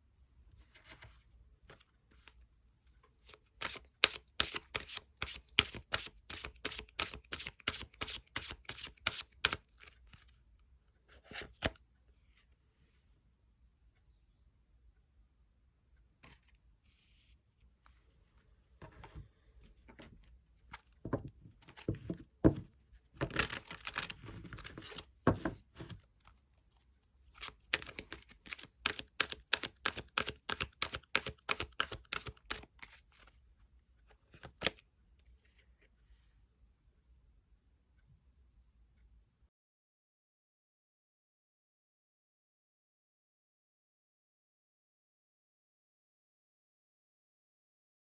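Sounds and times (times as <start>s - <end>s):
cards being shuffled: 3.2s - 10.3s, 23.2s - 25.0s, 27.4s - 33.3s.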